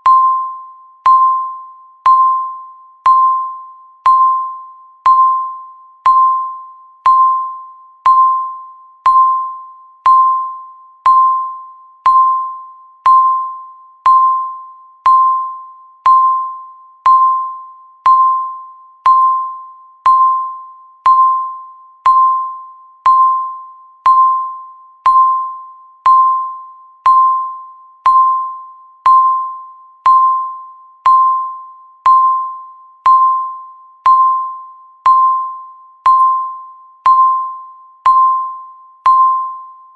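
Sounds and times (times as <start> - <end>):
countdown timer beeps: 0.0 - 39.9.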